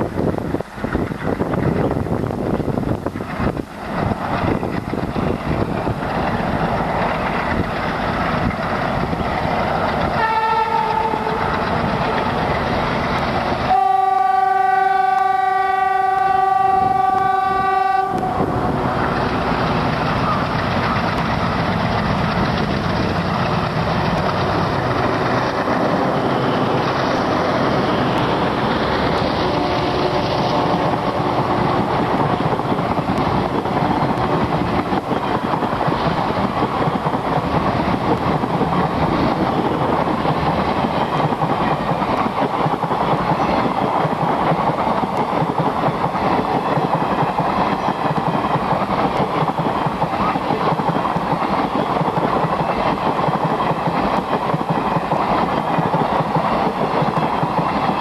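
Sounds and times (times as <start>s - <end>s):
wheels clattering on rails: 0.0s - 13.9s, 18.0s - 58.0s
diesel locomotive engines: 0.0s - 58.0s
locomotive horn blasts: 10.2s - 11.5s, 13.7s - 18.5s.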